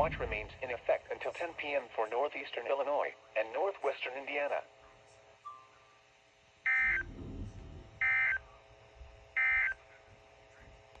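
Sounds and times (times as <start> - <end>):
two-tone digital data bursts: 6.7 - 7.1, 8.0 - 8.4, 9.4 - 9.8.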